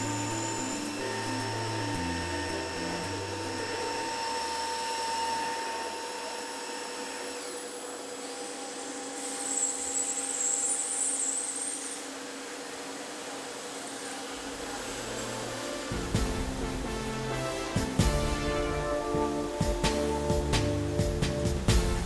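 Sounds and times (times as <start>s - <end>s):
machine whining tones: 0.0s - 12.7s
hiss: 8.2s - 22.0s.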